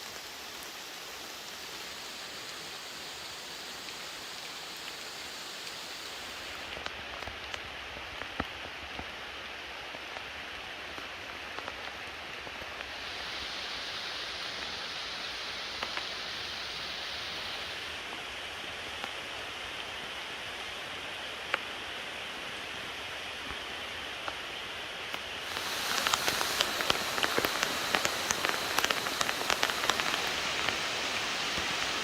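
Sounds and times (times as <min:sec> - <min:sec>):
steady rain in forest: 0:00.0 - 0:32.0.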